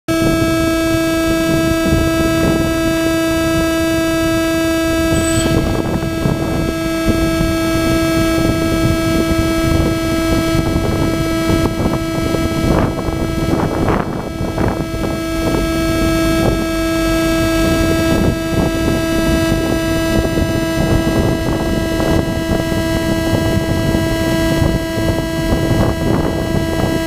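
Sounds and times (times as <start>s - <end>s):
electrical whine: 0.2s - 27.0s
rough rushing noise: 4.8s - 6.4s.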